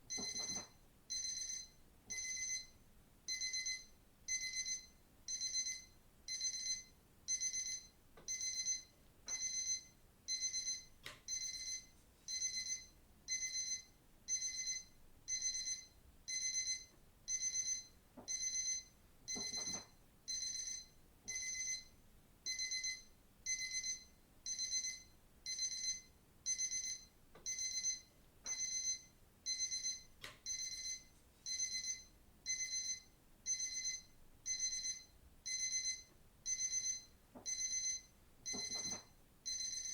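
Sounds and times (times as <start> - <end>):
digital watch alarm beeping: 0.1 - 2.7, 3.3 - 21.9, 22.5 - 39.9.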